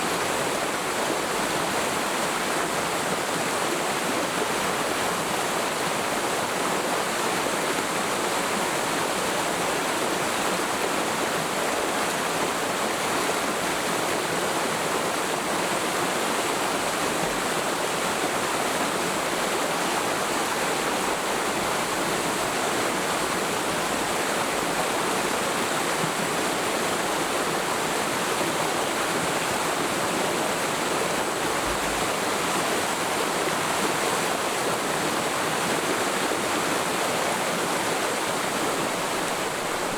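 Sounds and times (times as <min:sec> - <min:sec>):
stream flowing over rocks: 0:00.0 - 0:39.9.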